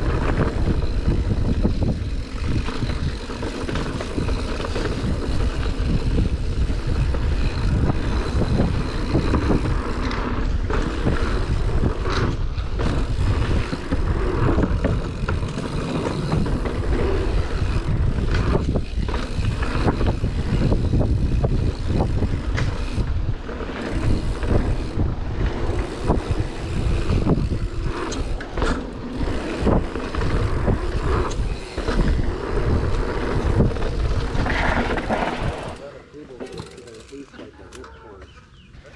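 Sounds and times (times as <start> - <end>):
wind rumble on microphone: 0.0 - 35.8
bike clicks and rattles: 0.0 - 38.9.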